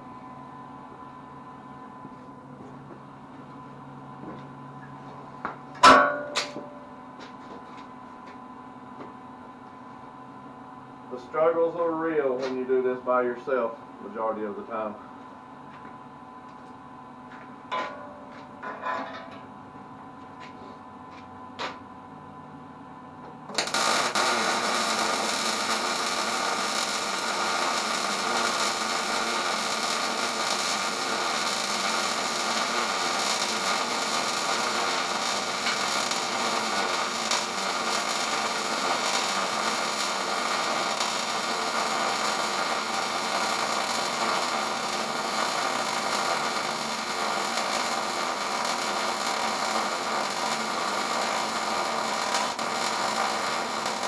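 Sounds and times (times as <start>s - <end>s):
welding arc crackling hiss: 23.5s - 54.0s.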